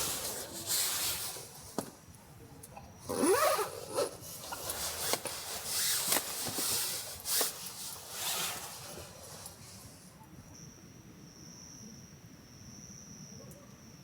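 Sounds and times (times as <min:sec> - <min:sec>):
rubbing and scraping: 0:04.4 - 0:09.7.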